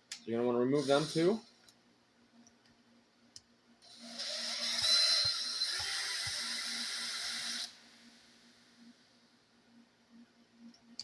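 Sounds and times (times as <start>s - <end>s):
power driver whirring: 0.8s - 1.4s, 3.9s - 7.8s.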